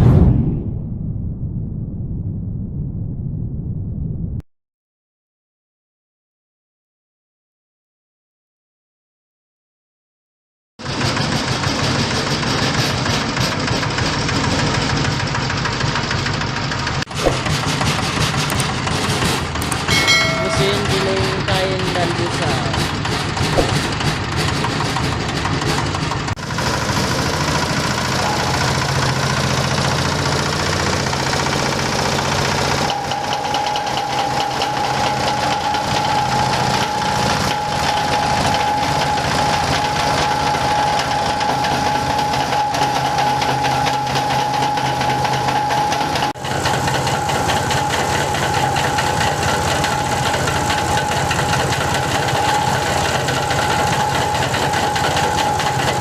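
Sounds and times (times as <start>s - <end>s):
shredding machine running: 10.8s - 56.0s
high-pitched whine: 19.9s - 22.9s.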